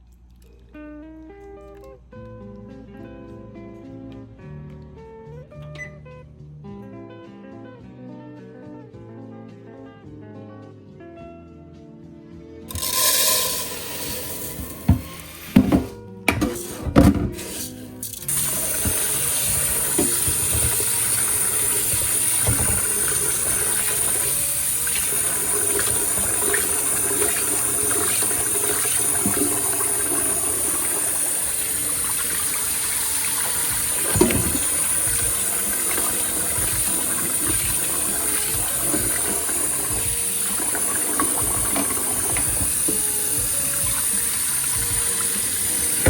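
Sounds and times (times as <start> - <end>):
tap running into sink: 12.7 - 46.0.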